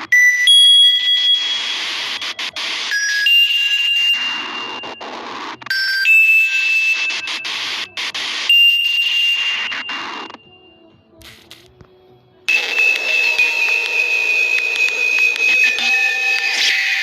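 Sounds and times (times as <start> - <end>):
bell-like ringtone chime: 0.2 - 1.9, 3.0 - 7.7, 8.5 - 10.7, 12.5 - 17.0.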